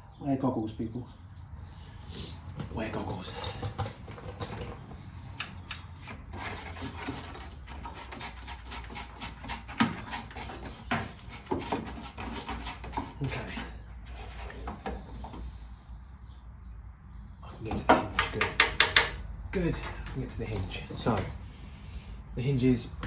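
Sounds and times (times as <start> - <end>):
screwdriver scraping mud: 5.4 - 14.8.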